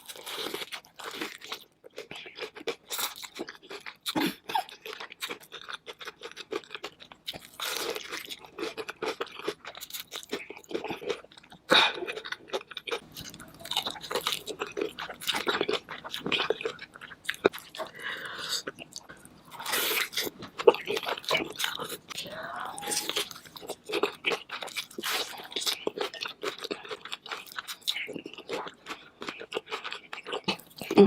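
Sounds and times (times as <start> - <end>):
chewing crunchy food: 0.0 - 31.0.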